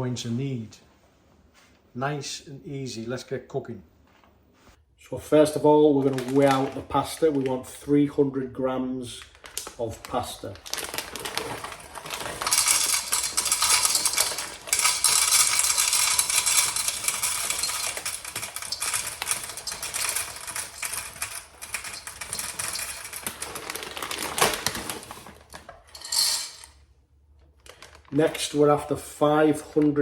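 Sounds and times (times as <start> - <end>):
dry pasta rattling: 5.9 - 7.6, 9.2 - 26.8.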